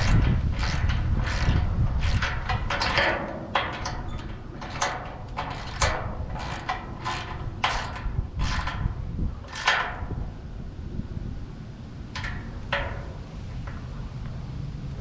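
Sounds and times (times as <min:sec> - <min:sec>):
ratchet wrench clicking: 0:00.0 - 0:10.1.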